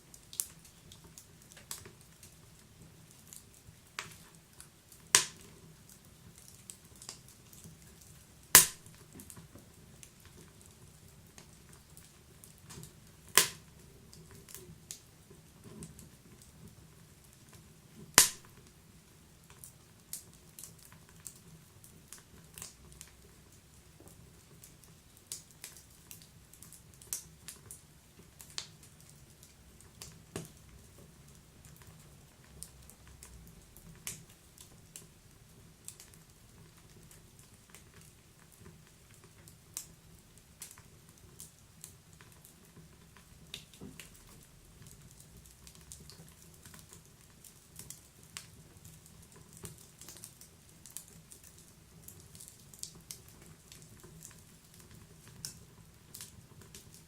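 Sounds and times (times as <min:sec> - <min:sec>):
wood fire crackling and popping: 0:00.0 - 0:57.0.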